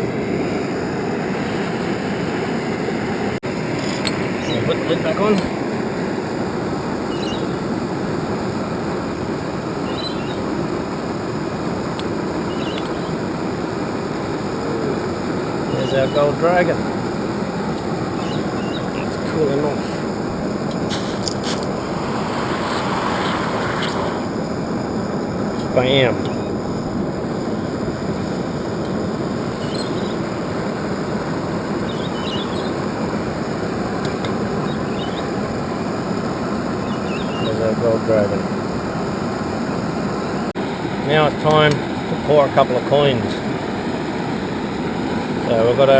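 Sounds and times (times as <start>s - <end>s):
short high chirps: 12.5s - 13.2s, 18.2s - 19.1s.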